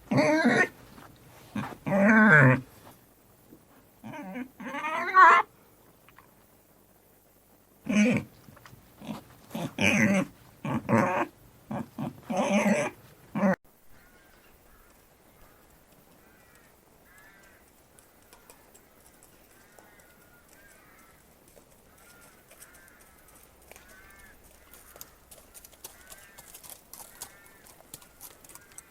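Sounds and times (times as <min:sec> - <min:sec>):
animal calling in harsh bursts: 0:04.0 - 0:05.5.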